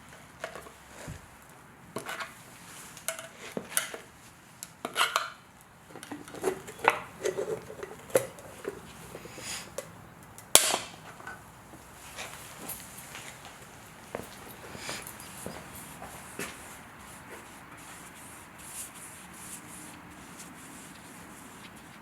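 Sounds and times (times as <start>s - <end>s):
metal objects clinking and scraping: 6.1s - 9.9s, 14.2s - 16.4s.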